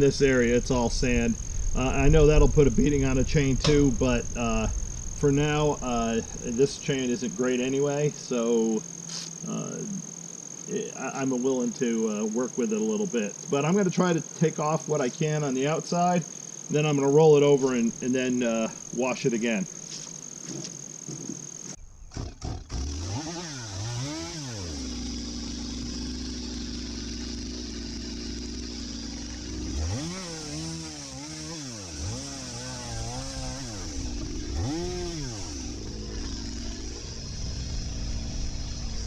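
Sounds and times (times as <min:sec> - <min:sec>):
chainsaw cutting tree root: 0:22.1 - 0:39.0
chainsaw idling and revving: 0:22.1 - 0:39.0.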